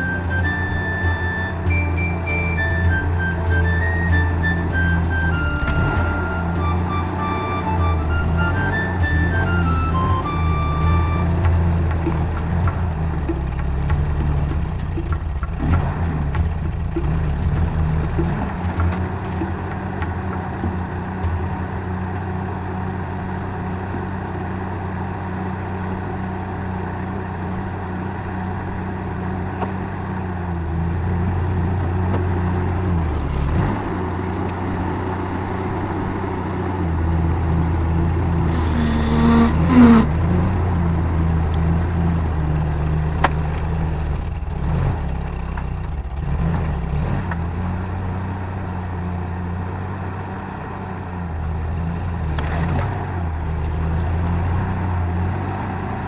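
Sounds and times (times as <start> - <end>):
rising squeal: 0.0 - 13.6, 38.4 - 41.2
motor engine running: 0.0 - 21.7, 37.0 - 47.0
clatter: 7.8 - 22.8, 37.2 - 48.2, 51.4 - 55.1.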